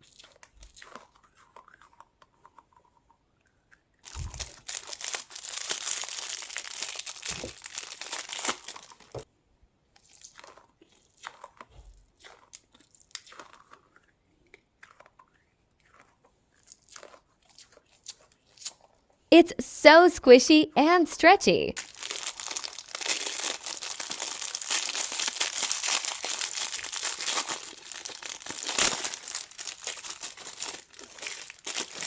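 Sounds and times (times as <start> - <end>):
plastic wrapping crinkling: 4.0 - 9.2, 21.8 - 32.0.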